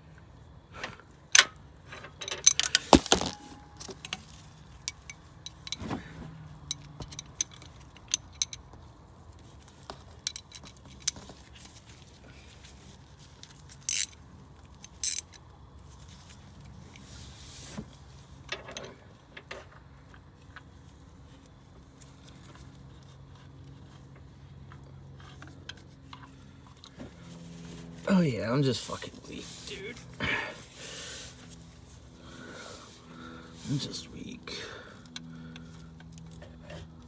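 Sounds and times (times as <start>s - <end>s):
sharp rasps: 13.9s - 14.1s, 15.0s - 15.2s
metallic tool clicks: 13.9s - 14.2s, 14.8s - 15.3s.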